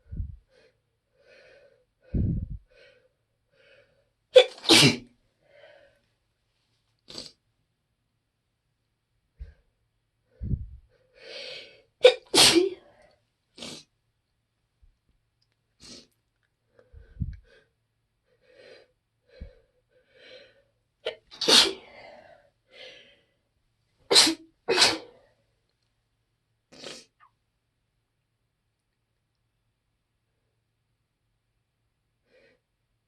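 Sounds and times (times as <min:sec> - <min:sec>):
person sneezing hard: 0:04.4 - 0:05.1, 0:12.0 - 0:12.8, 0:21.1 - 0:21.9, 0:24.1 - 0:25.1.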